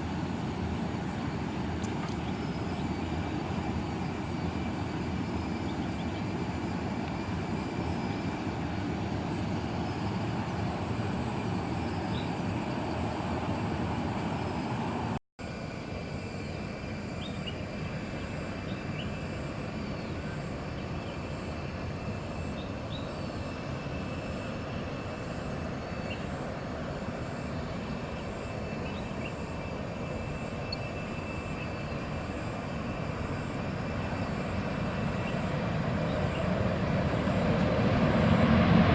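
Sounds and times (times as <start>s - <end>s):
distant jet engine rumble: 0.0s - 38.9s.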